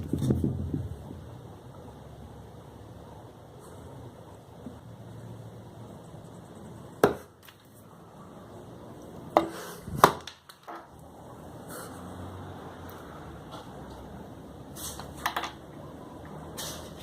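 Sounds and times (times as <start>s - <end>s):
sharp knocks on small hard parts: 7.0s - 7.7s, 9.3s - 10.9s.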